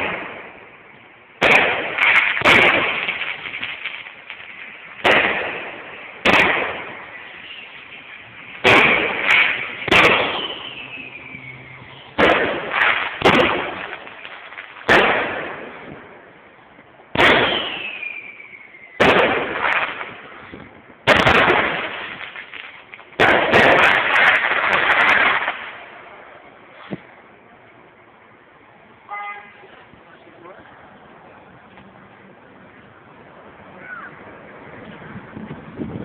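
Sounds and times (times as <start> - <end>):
firework crackling burst: 0.0 - 16.5, 17.1 - 27.1
fireworks bangs: 0.0 - 28.0
falling firework whistle: 6.4 - 14.3, 17.2 - 19.5.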